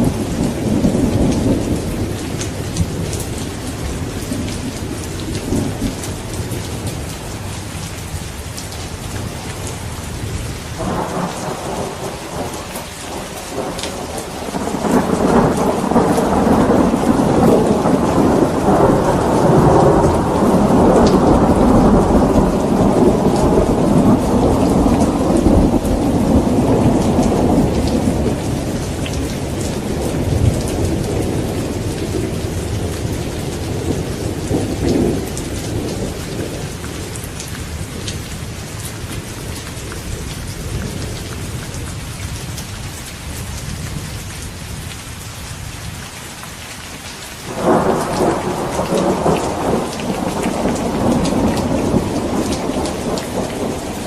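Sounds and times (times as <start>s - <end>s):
rolling thunder: 0.0s - 7.2s, 9.2s - 41.2s, 47.5s - 54.0s
rain falling: 0.0s - 54.0s
thunderclap: 10.8s - 36.7s, 47.5s - 54.0s.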